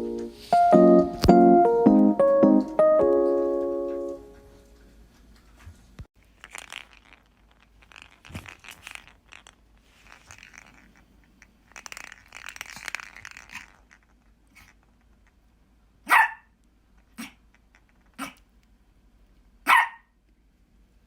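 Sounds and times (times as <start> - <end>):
ball toy rattling and scraping: 5.6 - 15.5, 16.9 - 18.4.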